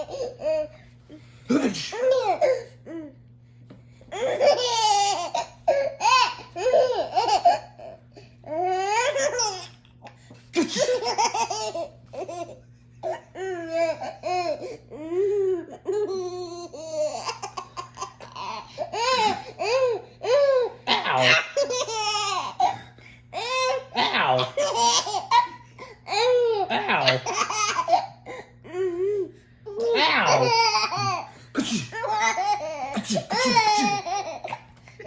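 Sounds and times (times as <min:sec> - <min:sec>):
faint steady hum: 0:00.0 - 0:35.0
child laughing: 0:31.9 - 0:34.7.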